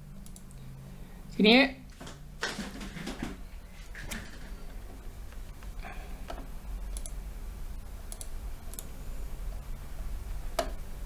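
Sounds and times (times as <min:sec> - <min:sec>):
low steady hum: 0:00.0 - 0:11.0
keyboard and mouse clicks: 0:00.2 - 0:00.6, 0:06.3 - 0:07.2, 0:08.1 - 0:08.9.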